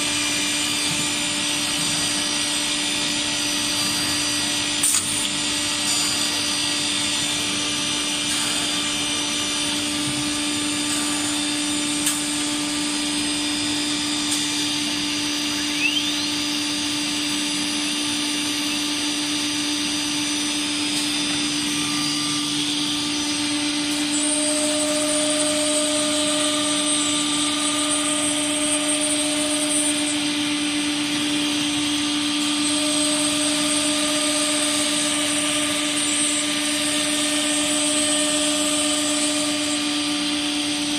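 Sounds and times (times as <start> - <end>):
router machine hum and whine: 0.0 - 40.9
extra high whine: 4.8 - 17.2.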